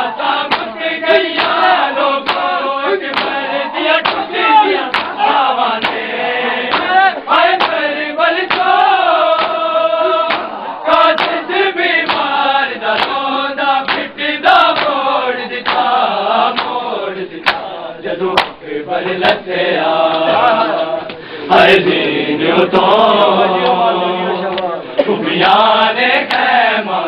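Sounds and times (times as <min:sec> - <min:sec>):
men chanting together: 0:00.0 - 0:27.0
hands slapping chests: 0:00.5 - 0:06.1, 0:06.7 - 0:07.0, 0:07.6 - 0:13.2, 0:13.8 - 0:16.8, 0:17.4 - 0:17.7, 0:18.4 - 0:18.6, 0:20.1 - 0:21.2, 0:26.3 - 0:26.5.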